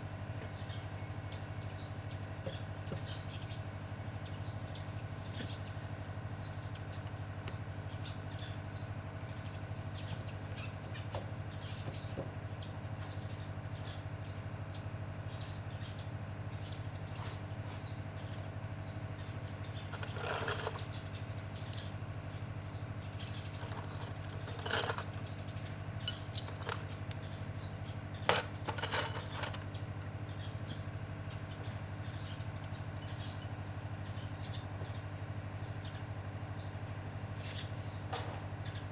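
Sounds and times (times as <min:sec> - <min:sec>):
steady low hum: 0:00.0 - 0:38.9
metal tools clinking: 0:19.9 - 0:20.9, 0:23.5 - 0:25.3, 0:26.0 - 0:27.0, 0:28.3 - 0:29.8, 0:33.0 - 0:33.5.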